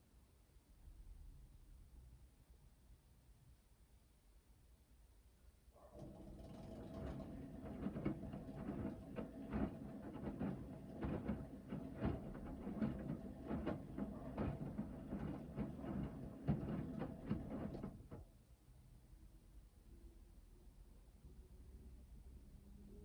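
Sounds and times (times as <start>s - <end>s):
laundry tumbling in washing machine: 5.9s - 18.3s
washing machine motor whine: 6.0s - 18.2s.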